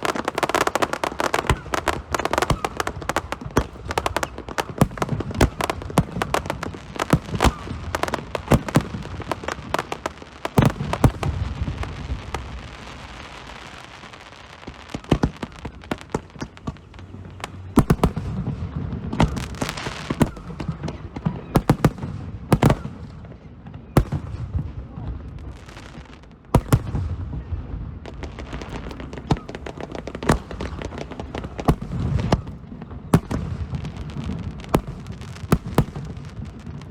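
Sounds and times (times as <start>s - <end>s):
fireworks bangs: 0.0s - 36.9s
fireworks crackling: 0.0s - 36.9s
fireworks hiss and pops: 28.2s - 36.9s.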